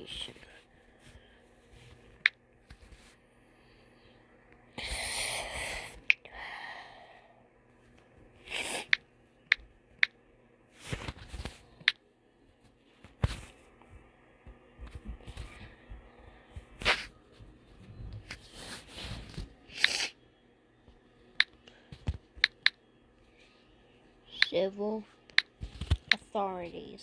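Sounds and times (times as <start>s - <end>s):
sharp clicks: 22.4s - 22.8s.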